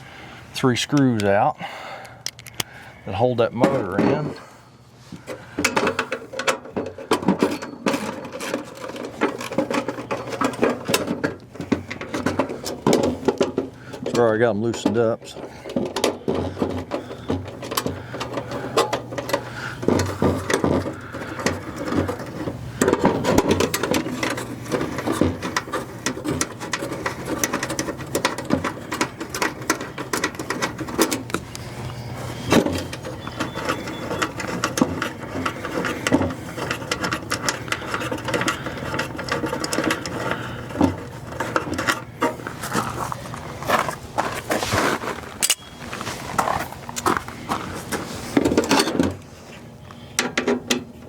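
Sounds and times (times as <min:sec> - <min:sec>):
steady low hum: 0:00.0 - 0:51.0
tools rattling in metal housing: 0:05.3 - 0:31.5, 0:32.4 - 0:43.4, 0:44.9 - 0:45.7, 0:48.4 - 0:49.2.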